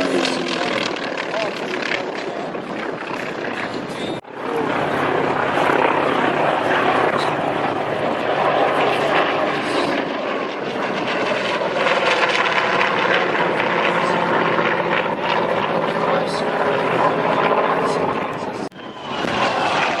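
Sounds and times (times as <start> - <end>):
propeller aircraft engine flying by: 0.0 - 20.0.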